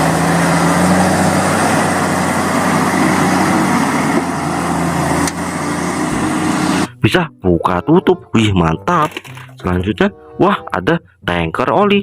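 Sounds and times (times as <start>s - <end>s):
heavy vehicle engine idling: 0.0s - 7.0s.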